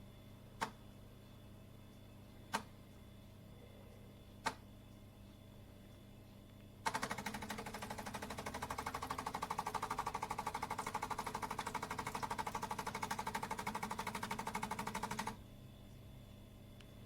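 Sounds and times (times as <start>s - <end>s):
coffee machine pump pulsing: 6.9s - 15.4s.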